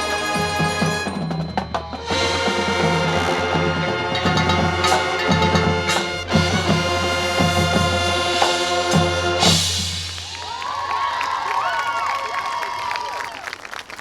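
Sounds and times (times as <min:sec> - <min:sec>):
marching band playing: 0:00.0 - 0:10.6.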